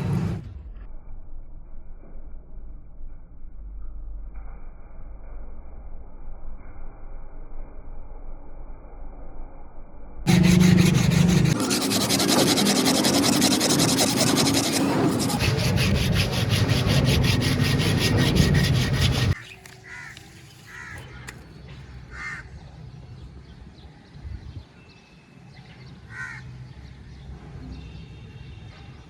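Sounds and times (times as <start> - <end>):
abrasive rubbing on a knife: 10.3 - 21.0.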